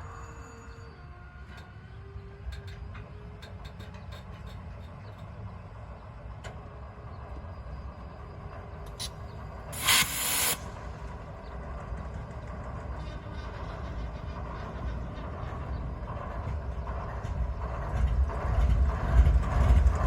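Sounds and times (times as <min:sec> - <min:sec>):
diesel locomotive idling rumble: 0:00.0 - 0:20.0
compressed air hissing: 0:09.7 - 0:10.9.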